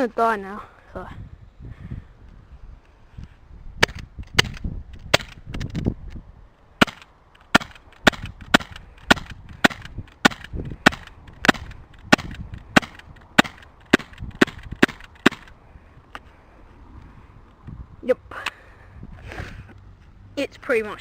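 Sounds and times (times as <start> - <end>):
sharp cracks: 3.8 - 6.2, 6.8 - 16.3.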